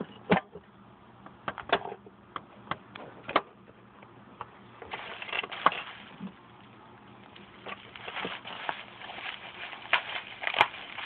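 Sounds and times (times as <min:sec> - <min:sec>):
bubble wrap crinkly rustling: 0:04.9 - 0:11.0
sharp crack: 0:07.4 - 0:11.0.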